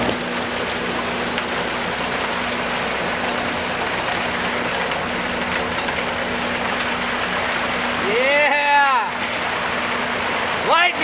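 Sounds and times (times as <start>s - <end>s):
steady low hum: 0.0s - 8.3s
water gushing and splashing: 0.0s - 11.0s.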